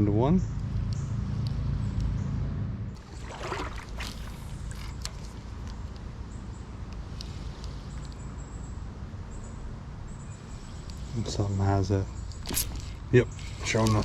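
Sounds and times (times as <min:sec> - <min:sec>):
fishing rod swish: 0:03.0 - 0:05.3.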